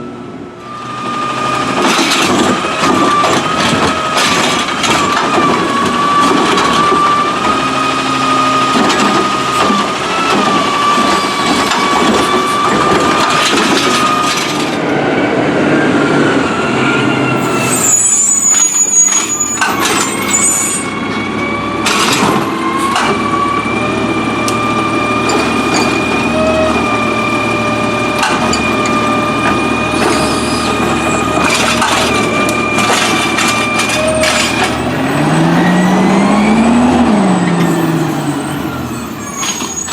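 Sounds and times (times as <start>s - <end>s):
garbage truck engine whining: 0.0s - 39.9s
knocks and clatter: 1.7s - 7.6s, 8.7s - 14.8s, 21.8s - 23.3s, 24.5s - 26.9s, 28.1s - 35.0s.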